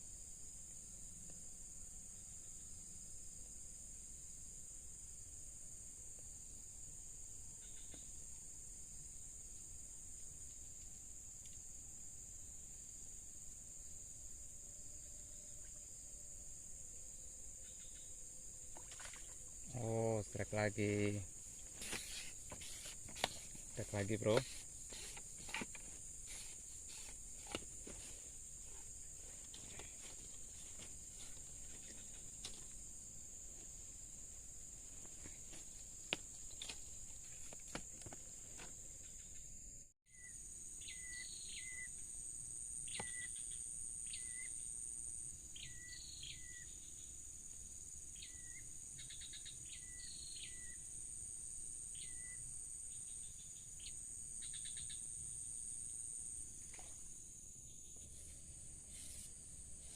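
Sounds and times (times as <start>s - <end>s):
insect chorus: 0.0s - 59.9s.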